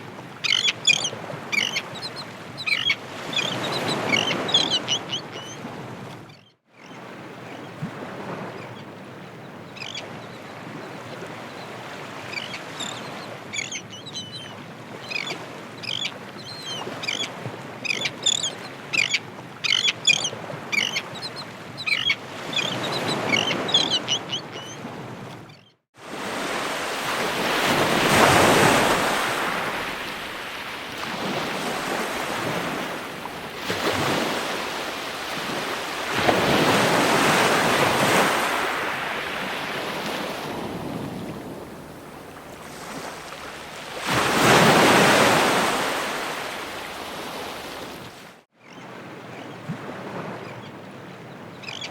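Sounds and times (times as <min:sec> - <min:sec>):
ocean surf washing: 0:14.5 - 0:50.5.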